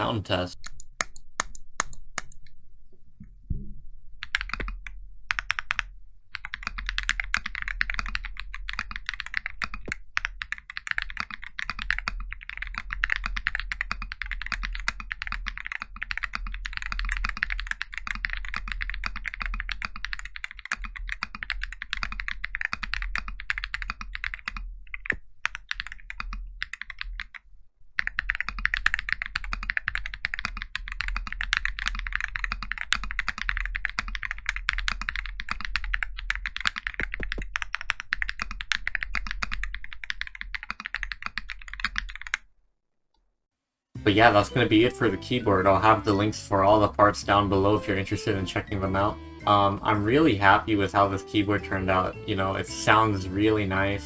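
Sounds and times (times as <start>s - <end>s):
mechanical keyboard typing: 4.2s - 27.4s, 28.0s - 42.5s.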